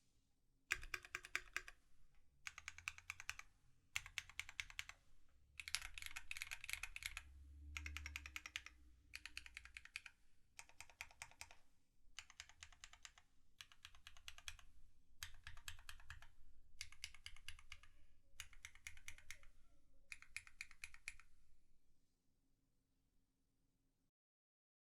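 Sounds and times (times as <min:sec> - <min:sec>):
typing on mechanical keyboard: 0:00.7 - 0:01.8, 0:02.4 - 0:05.0, 0:05.6 - 0:11.6, 0:12.2 - 0:19.5, 0:20.1 - 0:21.3.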